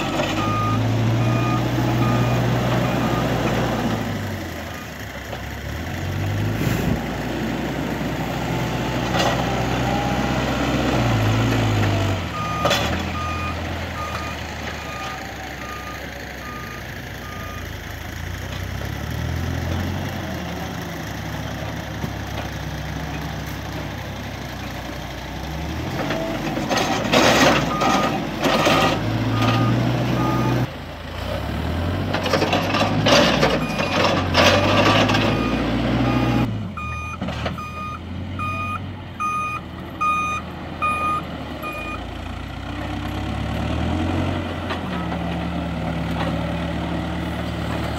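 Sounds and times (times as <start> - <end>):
diesel engine working under load: 0.0 - 47.9
reversing alarm beeping: 0.4 - 3.3, 12.3 - 17.7, 27.7 - 30.7, 33.6 - 42.0.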